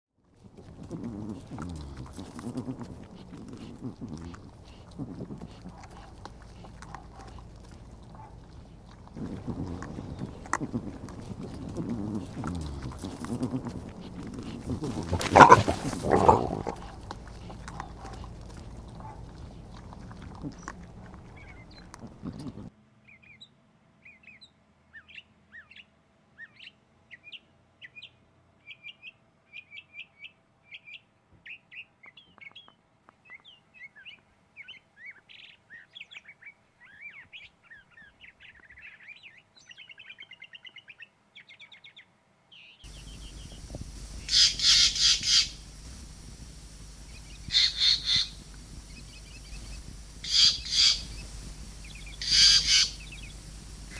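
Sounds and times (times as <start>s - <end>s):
small birds chirping: 0.4s - 53.9s
jays harsh calls: 1.4s - 22.7s, 42.9s - 53.9s.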